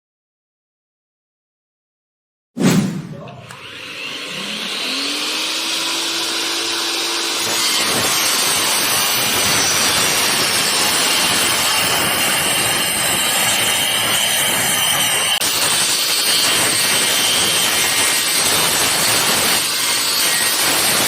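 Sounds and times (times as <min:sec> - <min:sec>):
circular saw whining: 0:03.1 - 0:15.4
saw cutting wooden board: 0:03.4 - 0:21.0.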